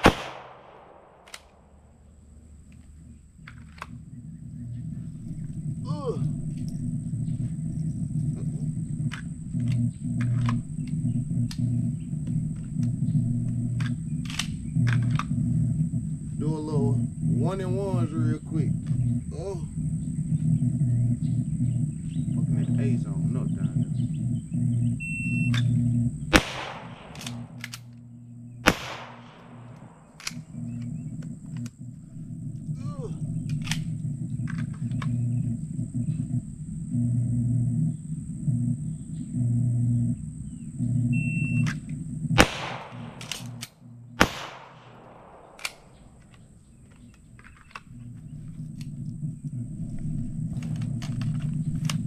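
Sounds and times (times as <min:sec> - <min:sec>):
gunshots: 0:00.0 - 0:02.0, 0:26.3 - 0:27.9, 0:28.6 - 0:30.9, 0:42.3 - 0:46.4
echoing handgun shots: 0:00.0 - 0:02.1, 0:26.3 - 0:27.9, 0:28.6 - 0:31.1, 0:42.4 - 0:46.6
faint sharp cracks: 0:00.0 - 0:04.0, 0:09.0 - 0:15.4, 0:25.5 - 0:28.0, 0:28.6 - 0:31.8, 0:33.2 - 0:35.2, 0:41.6 - 0:49.2
steady low rumble: 0:00.0 - 0:52.0.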